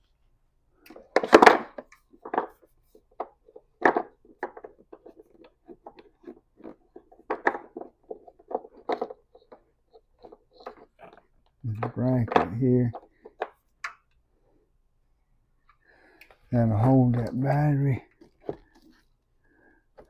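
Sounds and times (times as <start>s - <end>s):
metal hardware knocks and clatters: 3.2s - 13.6s.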